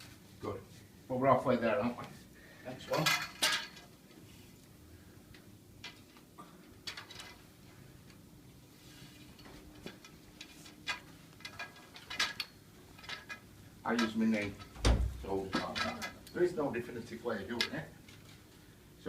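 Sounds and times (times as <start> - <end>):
wire shelving parts clicking: 2.9 - 4.0, 5.3 - 8.3, 9.2 - 18.4.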